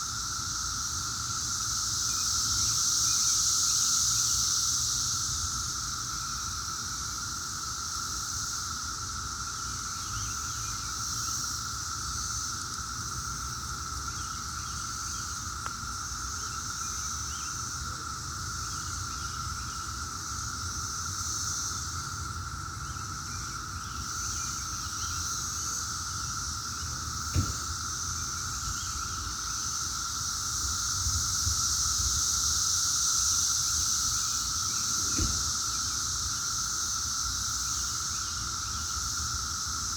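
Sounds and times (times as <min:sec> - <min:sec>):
cicadas droning: 0:00.0 - 0:39.9.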